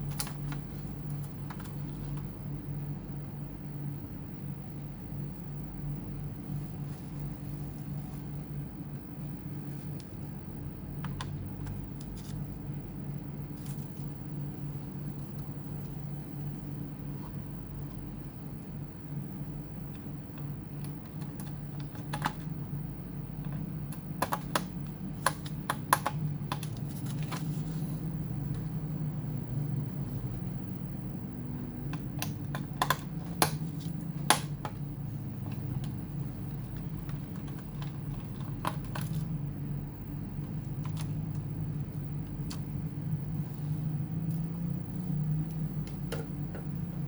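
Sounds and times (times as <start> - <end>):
steady low hum: 0.0 - 47.0
clicks of laptop parts and screws: 21.0 - 22.5, 23.4 - 27.7, 31.9 - 34.8, 35.4 - 39.3.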